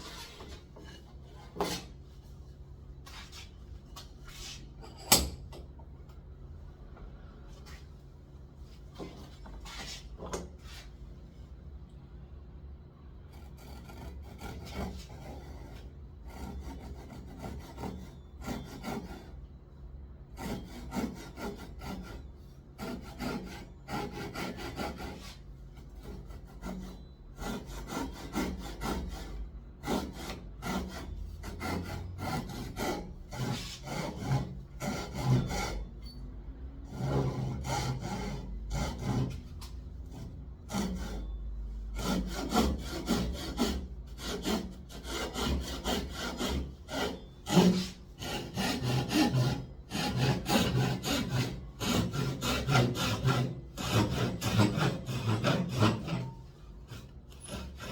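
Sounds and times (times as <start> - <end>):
hand saw cutting wood: 1.4 - 2.0, 13.4 - 19.4, 20.3 - 35.9, 36.9 - 41.3, 41.9 - 57.9.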